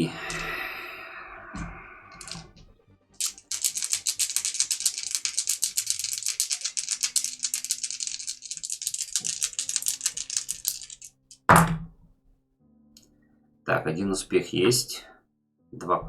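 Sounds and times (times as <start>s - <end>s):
dice rattling in hand: 1.5s - 2.6s, 3.2s - 11.5s
dice clattering on table: 1.6s - 2.6s, 3.2s - 11.8s.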